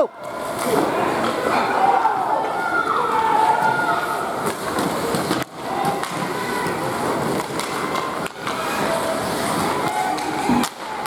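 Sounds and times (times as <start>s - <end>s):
ice skates scraping: 3.2s - 11.0s
hockey sticks and puck clacking: 4.4s - 11.0s.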